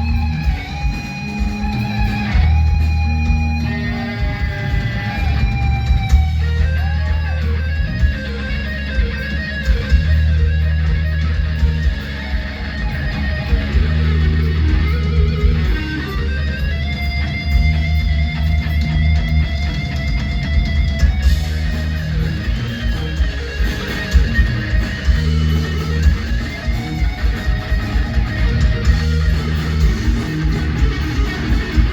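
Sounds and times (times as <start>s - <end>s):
bass and drums: 0.0s - 31.9s
electric guitar solo: 0.0s - 31.9s.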